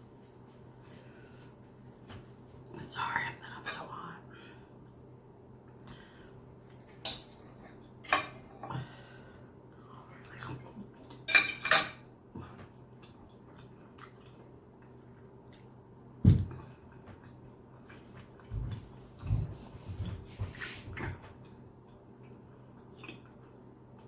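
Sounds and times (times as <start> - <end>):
knife and fork clinking on plate: 11.3 - 12.0
dull thump: 16.2 - 16.6.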